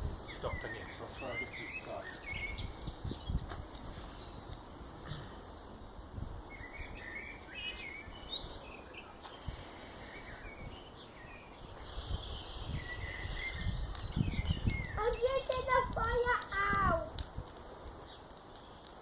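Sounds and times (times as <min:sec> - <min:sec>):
soft hiss: 0:00.0 - 0:19.0
wind rumbling on microphone: 0:00.0 - 0:19.0
short bird chirps: 0:11.7 - 0:15.4.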